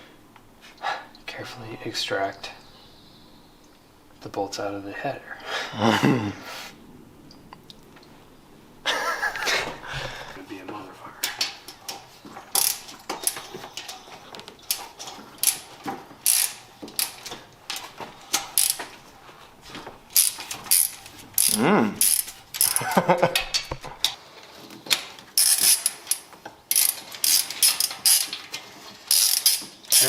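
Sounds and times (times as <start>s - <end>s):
socket ratchet wrench clicking: 12.6s - 13.4s, 16.2s - 17.2s, 18.3s - 18.8s, 20.2s - 22.8s, 25.4s - 28.3s, 29.1s - 30.0s.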